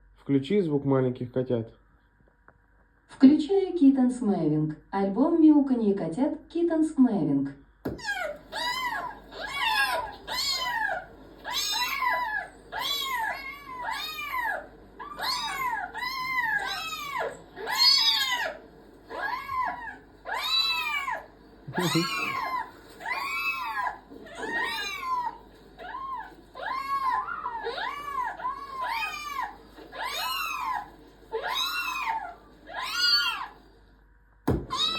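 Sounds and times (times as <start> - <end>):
kittens meowing through a speaker: 8.0 - 33.6.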